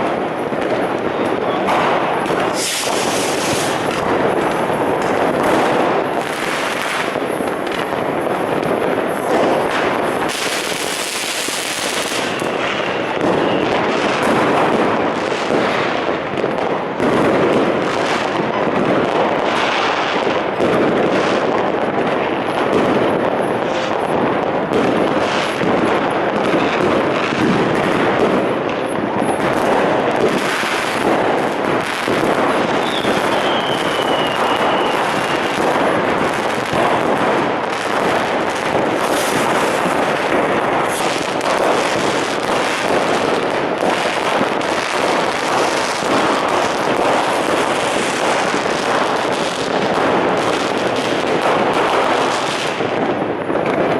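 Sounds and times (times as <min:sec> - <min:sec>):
fireworks crackling and banging: 0:00.0 - 0:53.9
falling firework whistle: 0:01.0 - 0:04.6, 0:10.0 - 0:14.6, 0:31.9 - 0:35.9.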